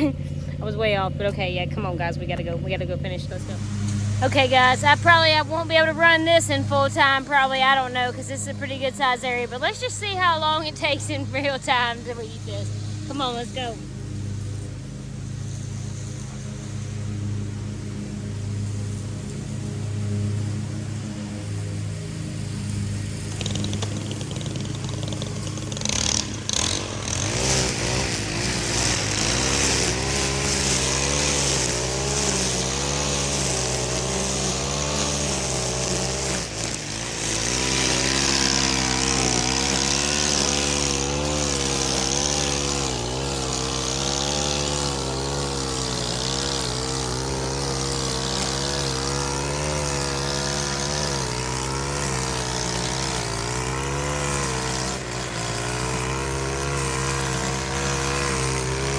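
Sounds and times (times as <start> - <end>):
hiss of grass cutting: 0.0 - 58.9
low engine hum: 0.0 - 58.9
string trimmer engine running: 0.0 - 58.9.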